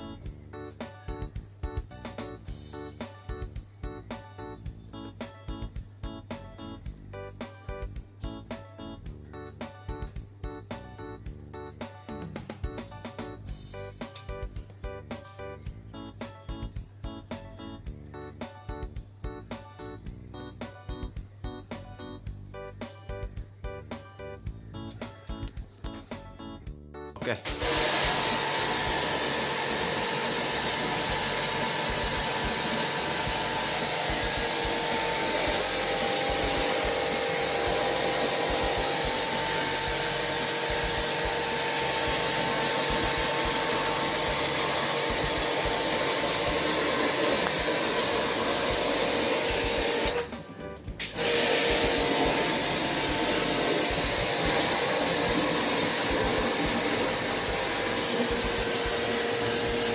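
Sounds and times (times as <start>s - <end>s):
electric motor whirring drone: 27.5s - 50.3s, 51.2s - 59.9s.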